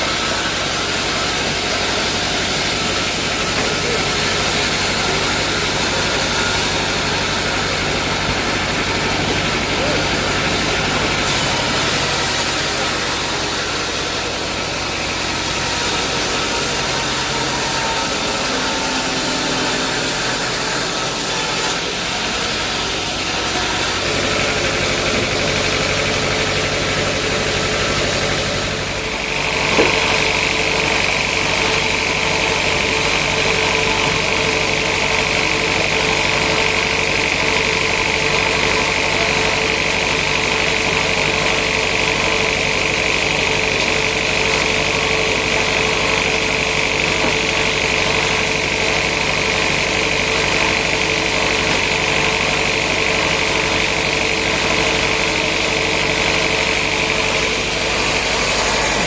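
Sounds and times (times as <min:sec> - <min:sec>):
sawmill machinery running: 0:00.0 - 0:59.0.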